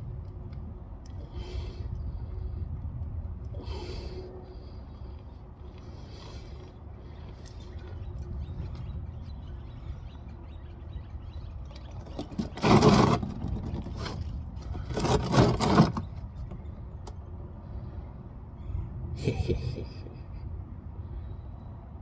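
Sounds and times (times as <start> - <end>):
metal scraping and clattering: 12.2 - 16.2.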